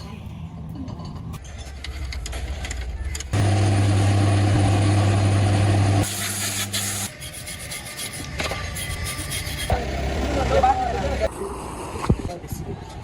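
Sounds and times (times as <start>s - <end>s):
machine loud low hum: 3.4s - 6.1s.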